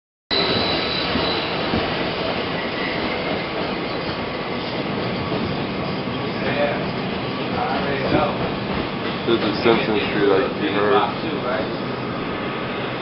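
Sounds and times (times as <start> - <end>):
high wheel squeal: 0.3 - 7.1
subway train rumbling: 0.3 - 13.0.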